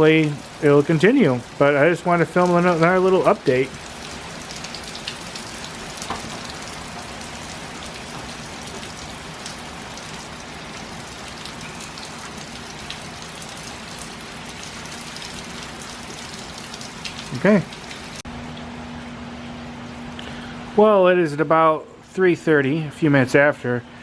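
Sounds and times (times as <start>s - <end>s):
heavy rain falling: 0.0s - 18.2s
water drips: 0.0s - 20.5s.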